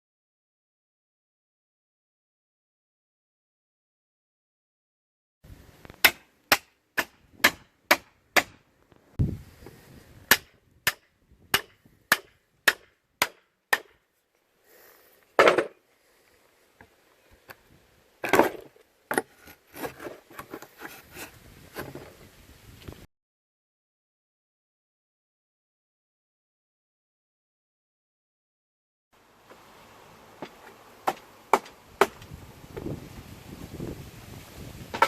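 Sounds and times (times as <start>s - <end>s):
hammer striking steel chisel: 10.3s - 14.0s
wood clattering: 15.4s - 15.8s, 18.2s - 22.1s.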